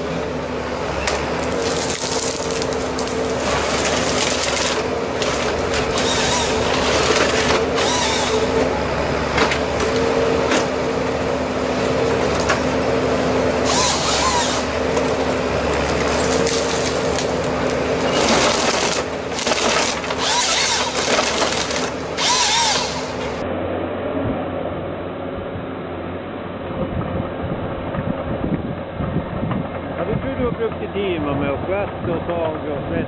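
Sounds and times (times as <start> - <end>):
wood-cutting machine motor: 0.0 - 23.5
rasping cutting: 1.1 - 8.7, 13.6 - 23.4.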